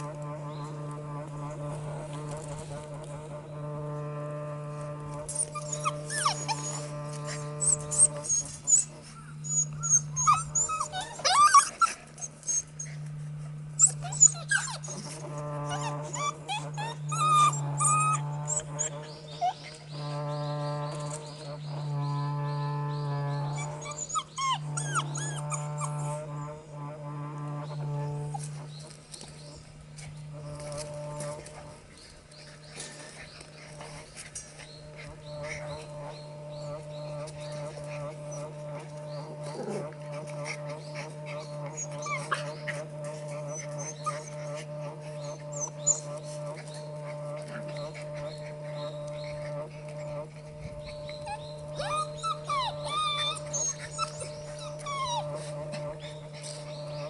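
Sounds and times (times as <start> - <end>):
steady low hum: 0.0 - 57.0
puppies squealing and yelping: 5.3 - 13.2, 13.8 - 19.8, 23.6 - 26.2, 37.1 - 57.0.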